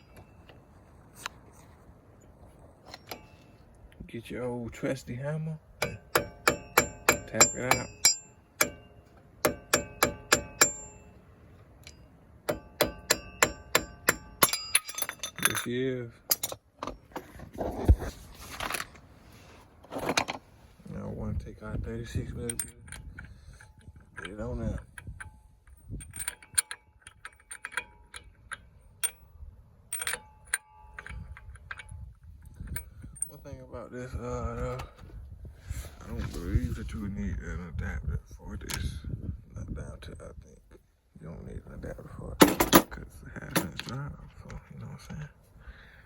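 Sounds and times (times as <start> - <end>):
hammer striking metal: 5.8 - 11.2, 11.9 - 15.4
metallic clicks and clinks: 11.8 - 17.1, 22.4 - 33.4.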